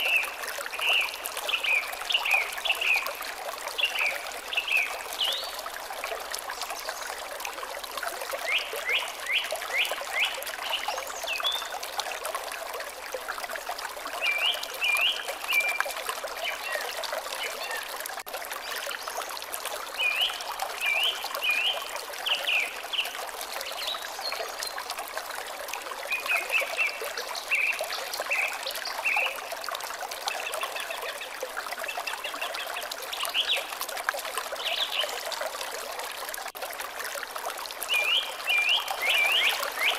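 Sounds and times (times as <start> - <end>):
stream trickling: 0.0 - 39.9.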